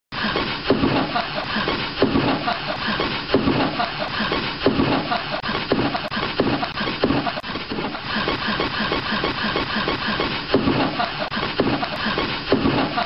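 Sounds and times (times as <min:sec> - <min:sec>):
rhythmic rasping scraping strokes: 0:00.2 - 0:13.0.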